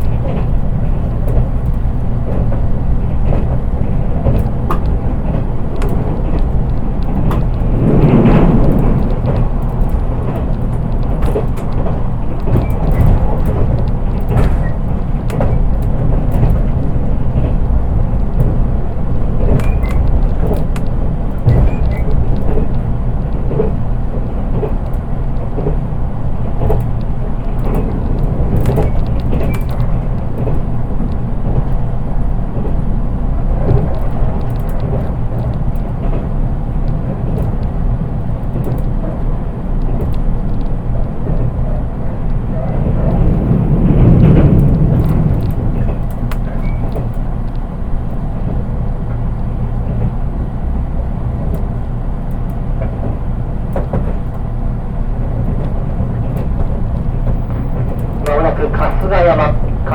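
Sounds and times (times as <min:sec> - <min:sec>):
train wheels rumbling on rail: 0:00.0 - 0:59.9.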